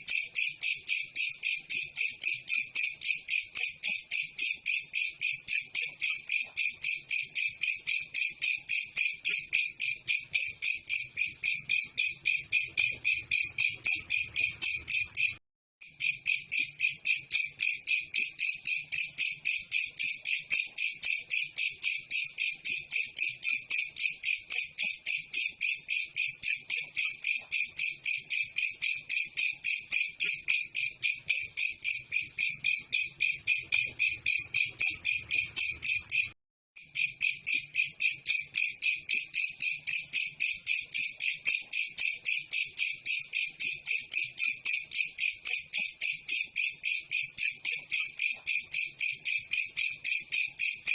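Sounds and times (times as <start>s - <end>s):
insect pulsed buzzing call: 10.9s - 15.4s, 30.8s - 36.4s.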